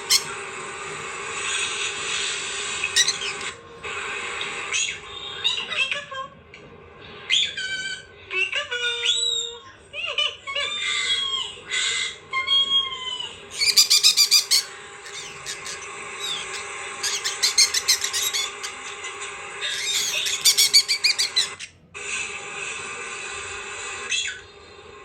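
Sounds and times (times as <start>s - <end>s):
pet birds chirping: 0.0s - 0.4s, 2.8s - 3.5s, 13.5s - 21.8s.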